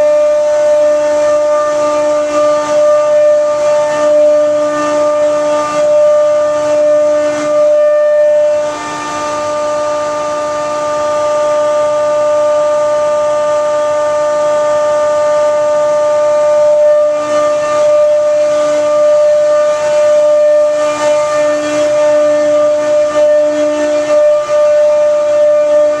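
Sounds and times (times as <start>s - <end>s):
high machine whine: 0.0s - 26.0s.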